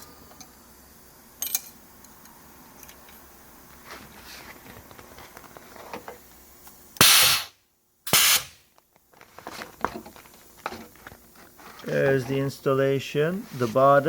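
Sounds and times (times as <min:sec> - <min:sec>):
pneumatic press air hisses: 0:07.0 - 0:08.6.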